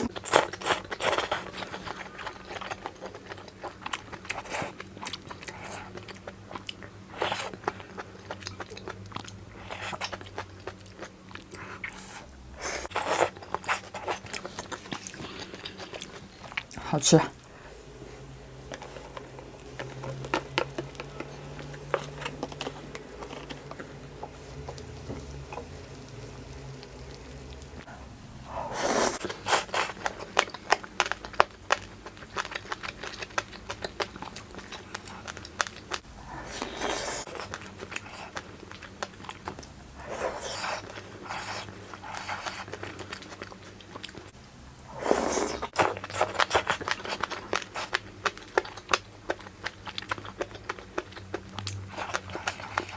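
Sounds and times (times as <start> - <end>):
chewing and crunching: 0.0 - 52.9
breathy bursts: 16.8 - 24.7, 27.8 - 29.3.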